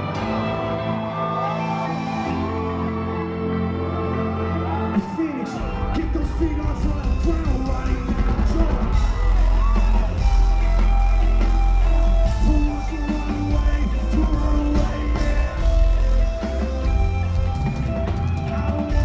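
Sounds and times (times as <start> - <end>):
live rock band playing: 0.0 - 19.0
voices yelling and singing: 0.0 - 19.0
heavy bass and drums: 5.7 - 19.0.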